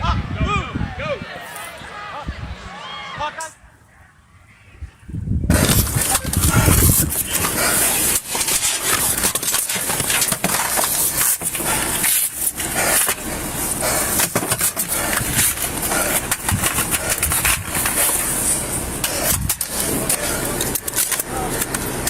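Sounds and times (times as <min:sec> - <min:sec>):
clothing rubbing against camera: 0:05.5 - 0:20.4.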